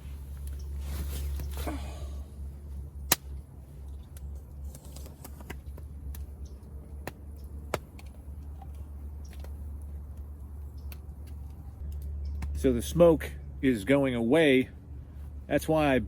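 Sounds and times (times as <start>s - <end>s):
campfire crackling and popping: 3.0s - 12.6s.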